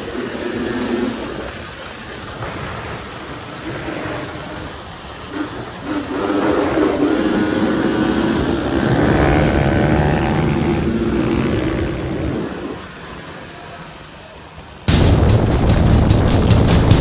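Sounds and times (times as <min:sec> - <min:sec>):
dirt bike engine running: 0:14.9 - 0:17.0.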